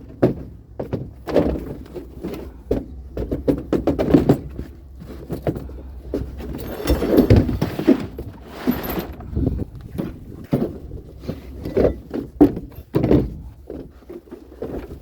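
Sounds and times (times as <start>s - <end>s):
hard objects knocking and rattling: 0.0s - 15.0s
scraping and clatter: 3.3s - 15.0s.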